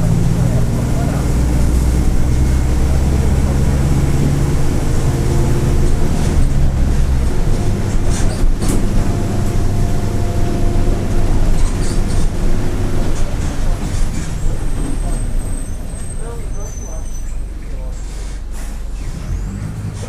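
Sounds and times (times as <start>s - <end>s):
bus engine running: 0.0s - 20.0s.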